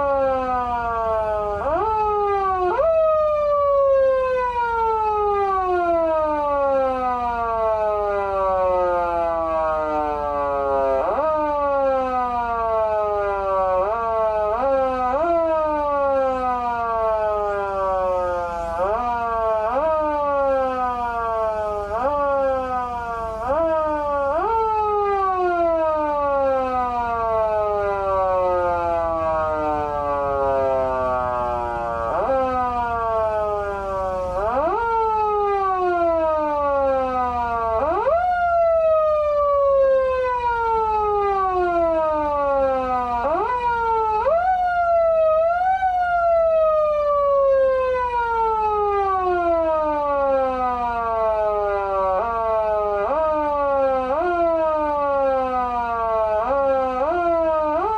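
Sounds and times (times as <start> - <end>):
siren tone rising and winding down: 27.9 - 36.4.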